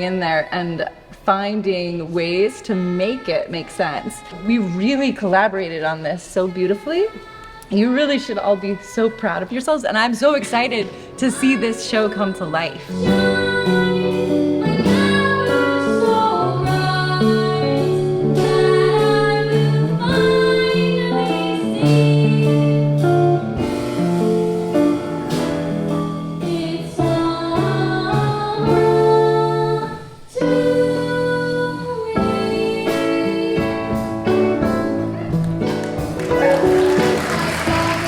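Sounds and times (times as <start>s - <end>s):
guitar: 0.1s - 38.0s
person singing: 36.2s - 38.0s.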